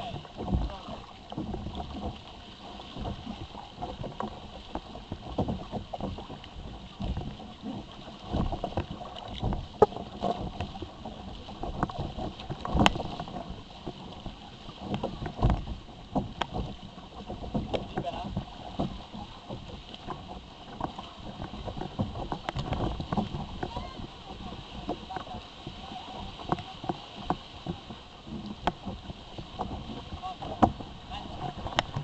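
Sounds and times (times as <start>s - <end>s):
water splashing against plastic hull: 0.0s - 32.0s
knocks on kayak hull: 26.4s - 32.0s.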